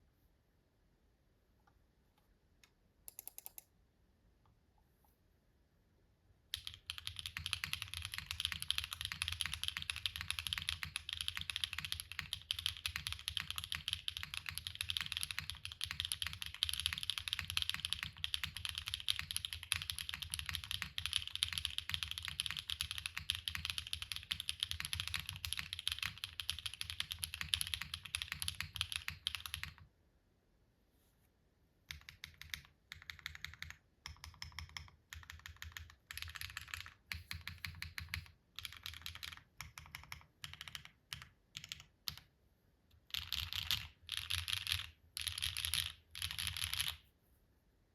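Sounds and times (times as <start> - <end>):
fast typing on mechanical keyboard: 6.6 - 29.8, 31.9 - 42.3, 42.9 - 47.0.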